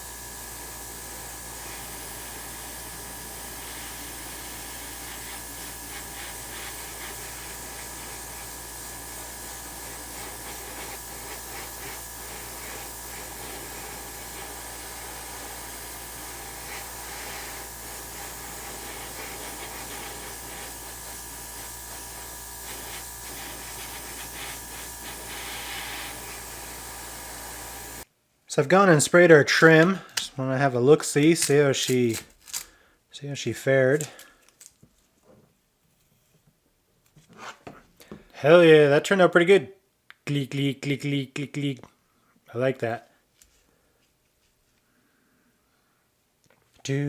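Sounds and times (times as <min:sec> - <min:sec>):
airbrush spraying hiss: 0:00.0 - 0:28.0.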